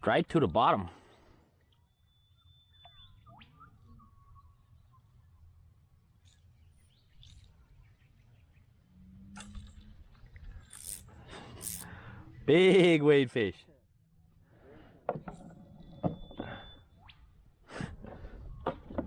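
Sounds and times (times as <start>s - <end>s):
faint bird whistles and chirps: 1.7s - 5.5s, 15.8s - 17.4s.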